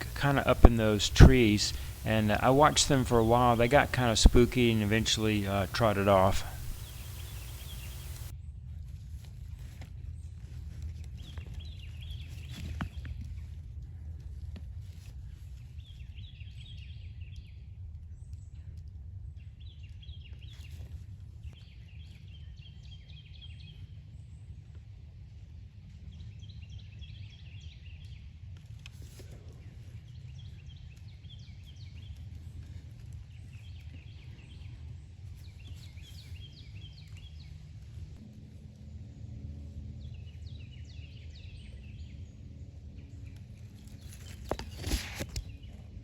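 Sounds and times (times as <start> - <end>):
songbird singing high notes: 0.0 - 8.3
steady low rumble: 0.0 - 8.3.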